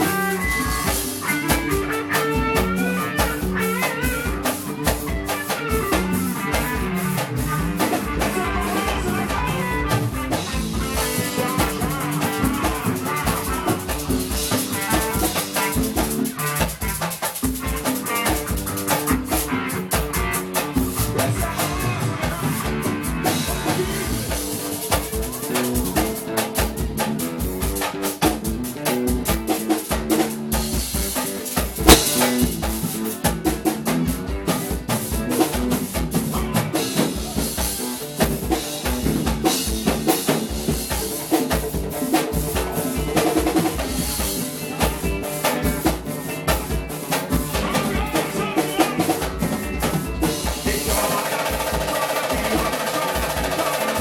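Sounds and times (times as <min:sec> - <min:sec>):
drum kit beat: 0:00.0 - 0:54.0
live band playing: 0:00.0 - 0:54.0.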